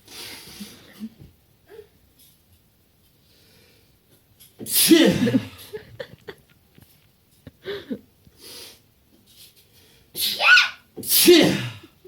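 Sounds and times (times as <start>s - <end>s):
person sneezing: 4.6s - 5.5s, 10.2s - 11.9s.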